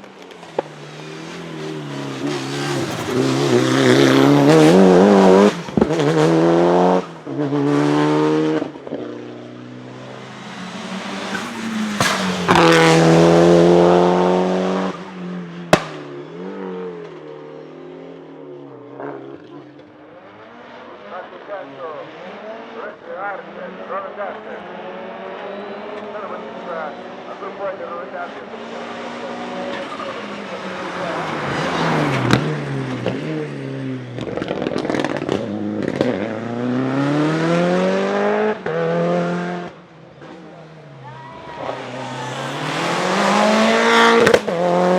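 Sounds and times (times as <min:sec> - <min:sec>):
turbocharged car engine at full throttle: 0:00.0 - 0:44.9
exhaust cracks and pops: 0:34.2 - 0:36.1.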